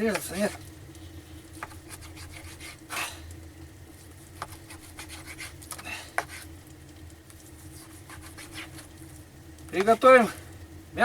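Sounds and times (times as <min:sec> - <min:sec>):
knife cutting meat on a board: 0:01.6 - 0:03.1, 0:04.2 - 0:06.5, 0:07.8 - 0:08.9
knife scrapes and knocks: 0:01.6 - 0:03.1, 0:04.3 - 0:06.5, 0:07.7 - 0:08.9.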